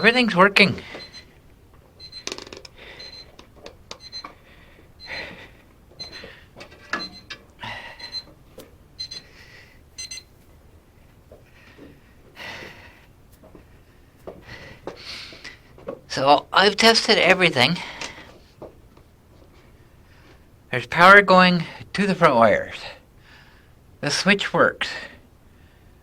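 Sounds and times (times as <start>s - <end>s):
clicks and rustling from hands: 0.9s - 4.4s
short high electronic beeps: 10.0s - 10.3s.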